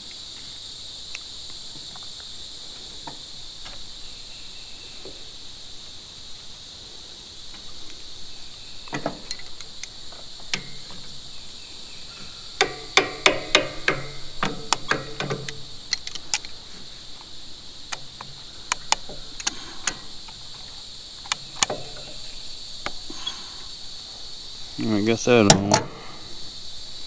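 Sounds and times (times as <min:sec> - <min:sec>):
insects chirring: 0:00.0 - 0:27.0
small clicks and knocks: 0:08.8 - 0:11.2, 0:12.2 - 0:17.3, 0:17.9 - 0:23.2
sharp taps and clicks: 0:12.6 - 0:16.5.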